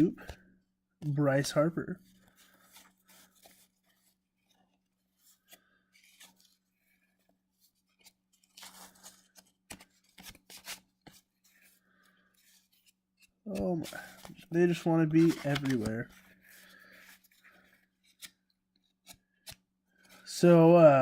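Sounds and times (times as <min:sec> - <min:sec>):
cardboard cards rustling: 0:01.4 - 0:20.3
card snaps and scrapes: 0:07.9 - 0:11.3, 0:15.1 - 0:15.9, 0:18.0 - 0:19.7.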